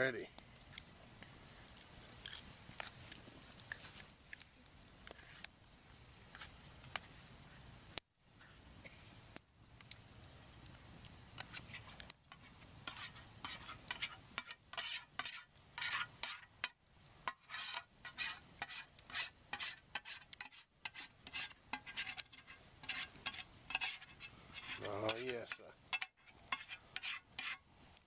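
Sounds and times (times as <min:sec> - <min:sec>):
spoons scraping in bowls: 0:11.4 - 0:27.6.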